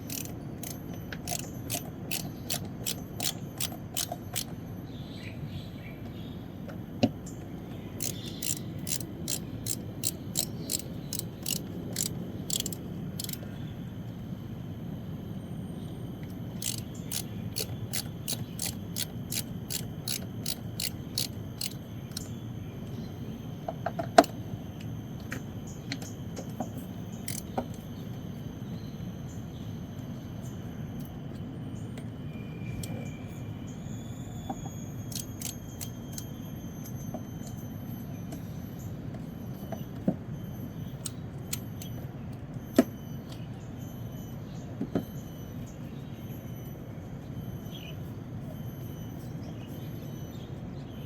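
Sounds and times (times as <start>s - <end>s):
hand ratchet clicking: 0.0s - 4.5s, 8.0s - 13.4s, 16.6s - 22.3s, 27.2s - 27.5s, 35.1s - 36.3s.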